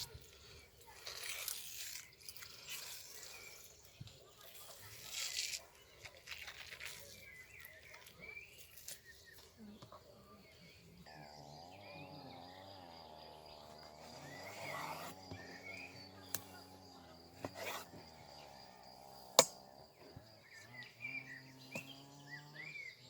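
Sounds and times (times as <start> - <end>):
bird chirps: 7.0 - 23.0.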